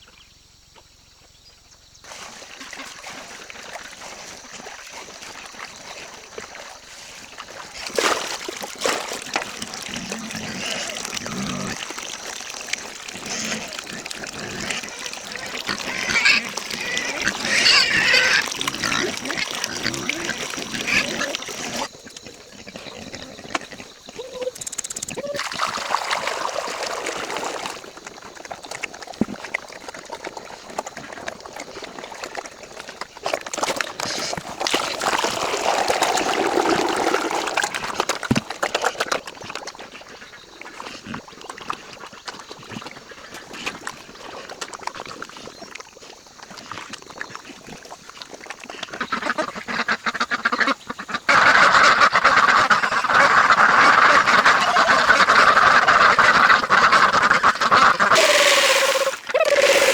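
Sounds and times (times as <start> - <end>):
ducks quacking: 13.1 - 22.6, 48.9 - 59.9.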